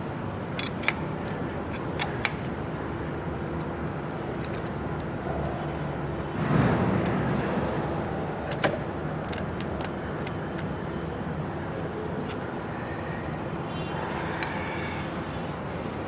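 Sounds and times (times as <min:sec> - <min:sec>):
workshop background noise: 0:00.0 - 0:13.1
metallic clicks of tools: 0:00.6 - 0:02.5.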